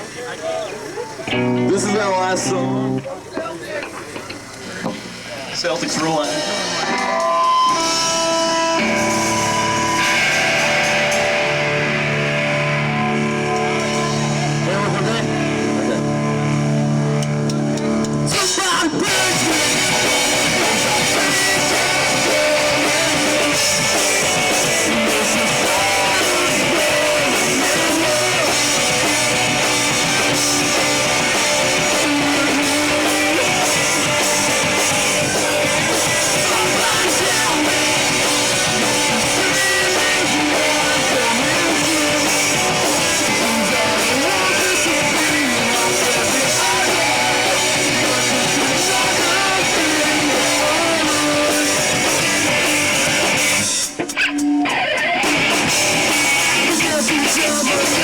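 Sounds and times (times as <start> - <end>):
live rock band playing: 0.0 - 58.0.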